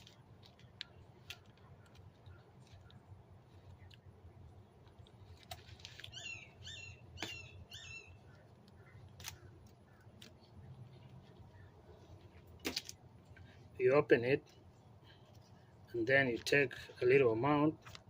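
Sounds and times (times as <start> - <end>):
small bird chirping: 5.9 - 12.1.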